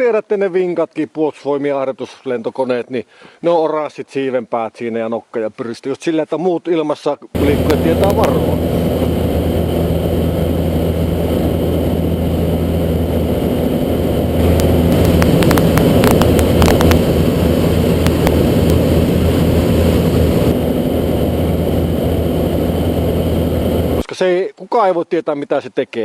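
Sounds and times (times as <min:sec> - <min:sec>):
motorcycle engine running: 0:07.4 - 0:24.0.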